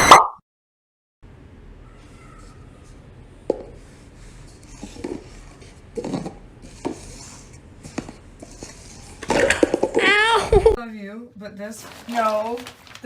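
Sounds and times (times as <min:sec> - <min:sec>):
low room hum: 0:01.2 - 0:13.0.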